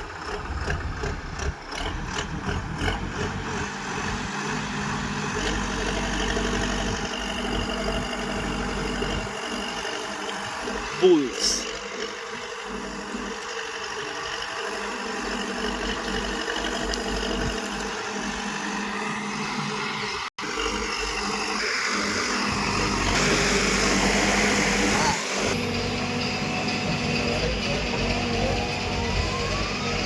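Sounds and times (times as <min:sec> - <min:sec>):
heavy engine running: 0:00.0 - 0:30.0
rising whine: 0:14.9 - 0:30.0.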